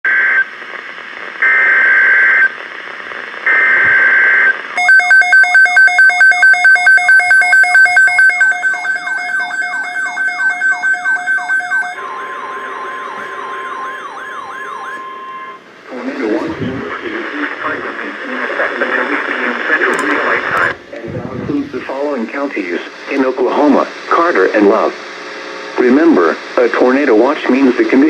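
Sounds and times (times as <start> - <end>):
steady single-pitch warning tone: 3.6 - 15.7
pulsing alarm with falling sweeps: 4.8 - 15.6
warbling digital data bursts: 4.8 - 15.6.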